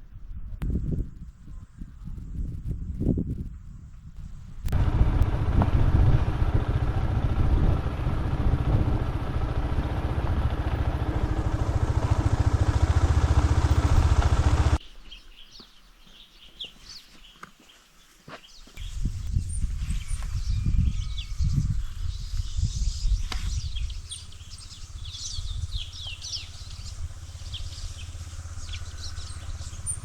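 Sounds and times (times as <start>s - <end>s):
motorcycle engine running: 4.7s - 14.8s, 23.5s - 30.0s
faint bird chirps: 10.9s - 30.0s.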